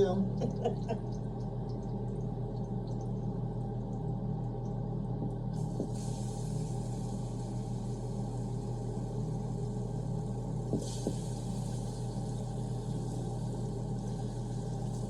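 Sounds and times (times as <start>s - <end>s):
range hood fan humming: 0.0s - 15.0s
grease sizzling in frying pan: 5.6s - 15.0s.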